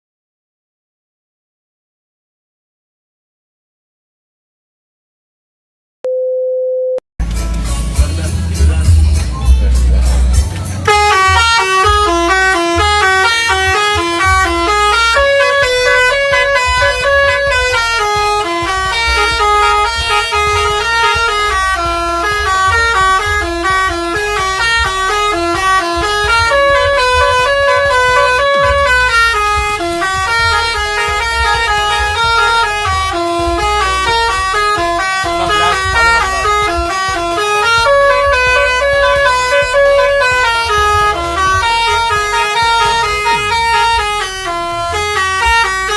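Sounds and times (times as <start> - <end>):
bus multi-tone horn melody: 9.7 - 45.9.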